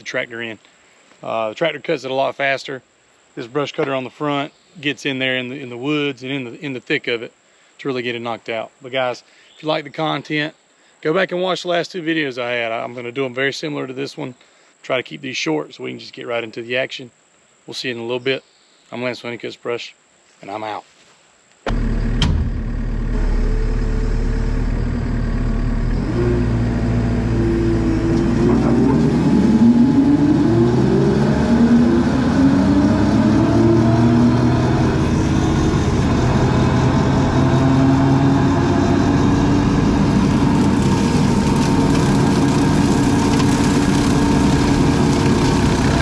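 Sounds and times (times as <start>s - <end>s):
skid steer engine running hard: 21.7s - 46.0s.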